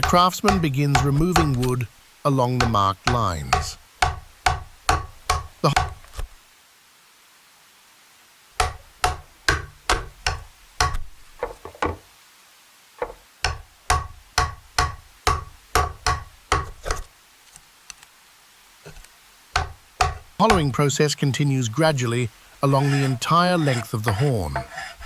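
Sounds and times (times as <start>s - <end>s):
wooden mallet striking chisel: 0.0s - 1.8s, 2.6s - 6.2s, 8.6s - 12.0s, 13.0s - 17.1s, 19.6s - 20.7s, 22.7s - 25.0s
faint taps: 13.0s - 17.0s.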